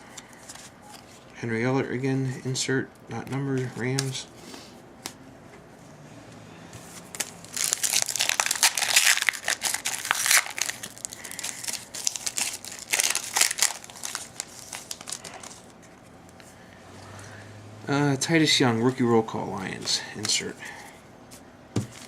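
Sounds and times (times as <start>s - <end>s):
foil wrapper crinkling: 7.1s - 15.8s.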